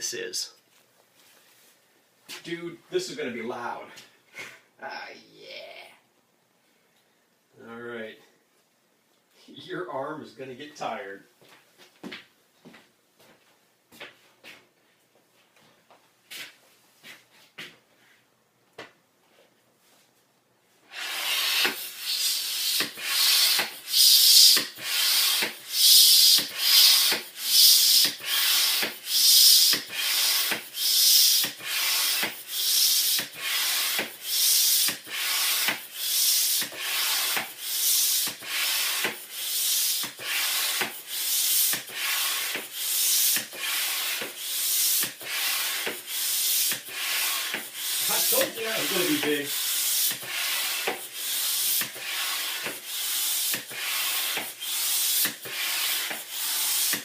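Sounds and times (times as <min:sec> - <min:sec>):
hand balloon pump hissing: 0:20.8 - 0:57.0.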